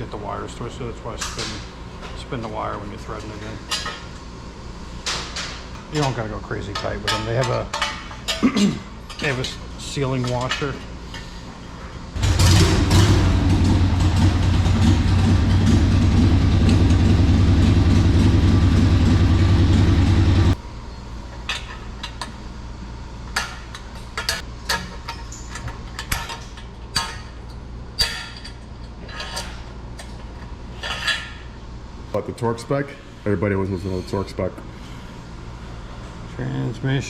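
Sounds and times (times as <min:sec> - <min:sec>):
loud motor hum: 0:12.2 - 0:20.6.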